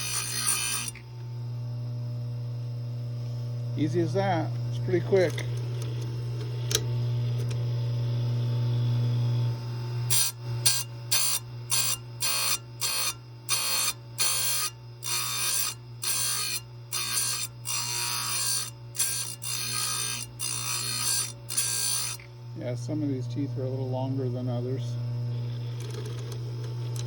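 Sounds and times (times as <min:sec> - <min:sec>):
short grinding rasps: 0:00.0 - 0:01.0, 0:10.1 - 0:22.3
grinder motor running: 0:00.0 - 0:27.0.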